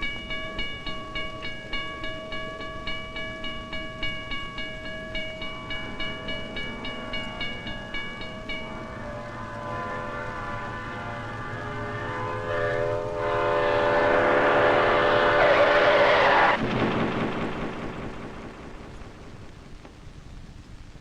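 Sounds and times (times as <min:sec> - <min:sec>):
rumble of approaching train: 0:00.0 - 0:21.0
locomotive air horn chord: 0:05.8 - 0:16.6.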